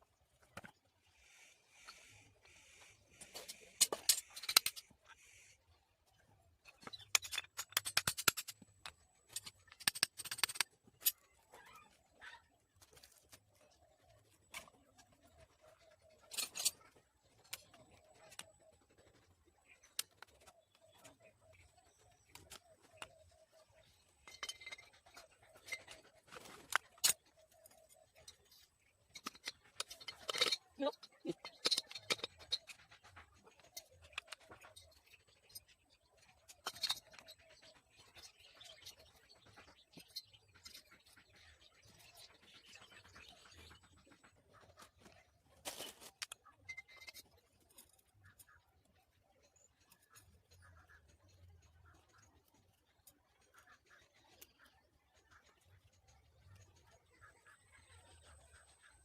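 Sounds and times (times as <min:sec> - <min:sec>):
metal tools clinking: 0:16.2 - 0:16.9, 0:24.2 - 0:26.0, 0:28.2 - 0:32.8.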